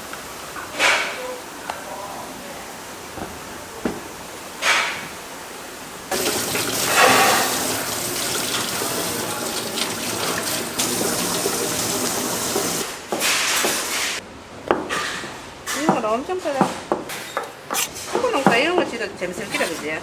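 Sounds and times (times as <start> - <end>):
water running from a tap: 6.1 - 12.8.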